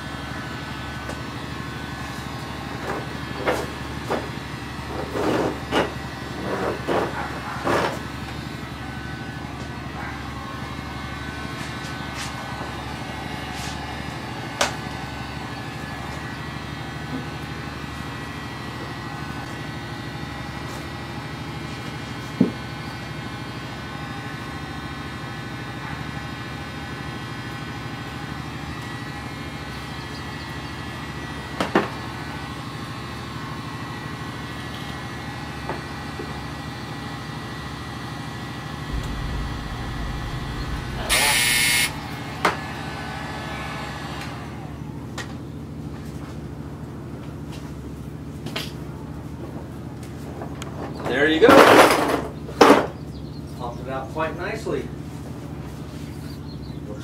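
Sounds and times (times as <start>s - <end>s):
heat gun fan whining: 0.0s - 25.6s, 38.9s - 45.3s
brief knocks: 38.9s - 42.2s.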